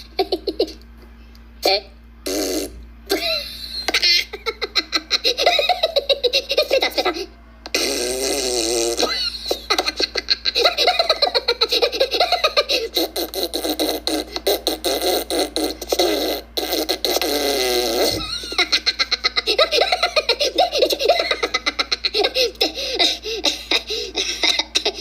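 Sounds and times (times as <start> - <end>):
cartoon characters laughing: 0.0 - 0.8, 3.1 - 7.9, 8.8 - 16.1, 17.8 - 25.0
comic fart noises: 2.2 - 3.2, 7.7 - 9.3, 12.8 - 18.5.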